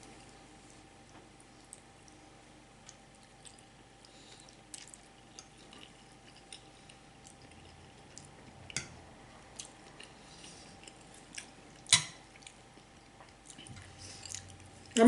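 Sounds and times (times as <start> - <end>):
wet chewing mouth sounds: 2.8 - 8.8, 9.5 - 14.9.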